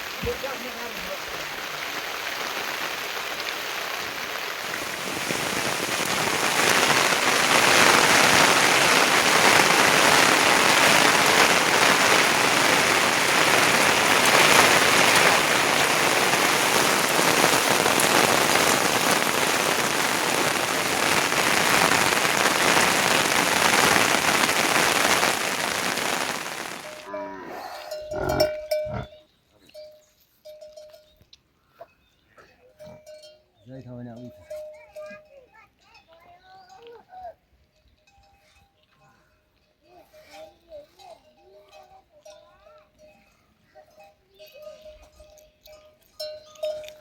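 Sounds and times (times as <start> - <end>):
heavy rain falling: 0.0 - 27.1.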